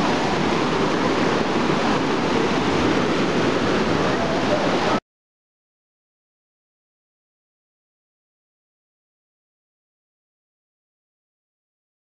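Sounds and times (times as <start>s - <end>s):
river rushing over rapids: 0.0s - 5.0s.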